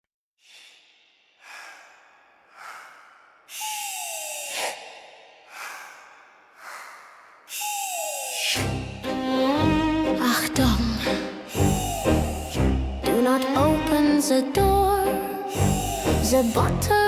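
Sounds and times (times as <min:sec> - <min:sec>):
breath-like hissing puffs: 0:00.4 - 0:08.8, 0:11.5 - 0:12.9, 0:15.5 - 0:16.6.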